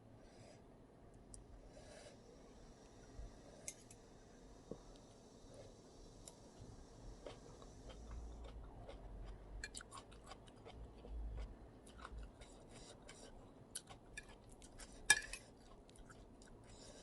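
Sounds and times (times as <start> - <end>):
wet chewing: 7.2 - 16.8.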